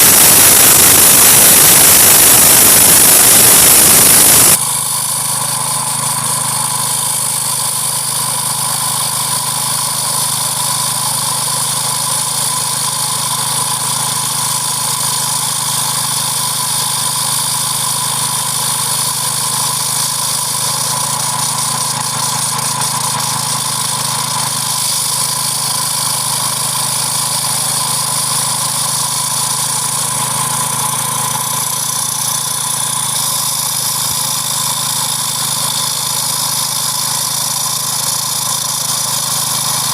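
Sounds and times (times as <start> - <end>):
core drill engine running: 0.0 - 39.9.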